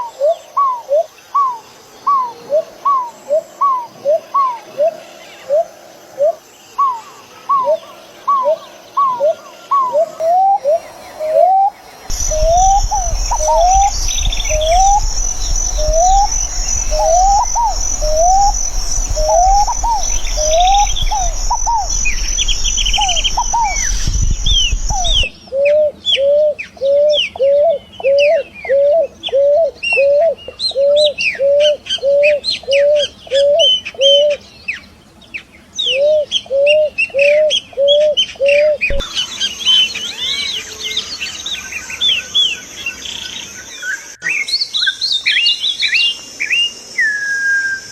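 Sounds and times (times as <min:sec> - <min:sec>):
low rising whistled bird note: 0:10.2 - 0:25.4, 0:38.9 - 0:40.6
high-pitched hum: 0:11.1 - 0:25.4, 0:38.9 - 0:39.2
quick high bird chirps: 0:12.1 - 0:25.4.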